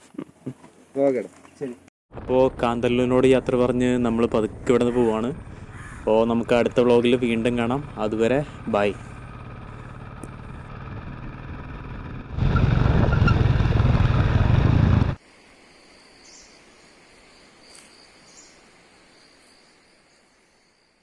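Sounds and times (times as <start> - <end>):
engine hum: 2.1 - 15.2
insects chirring: 15.2 - 21.0.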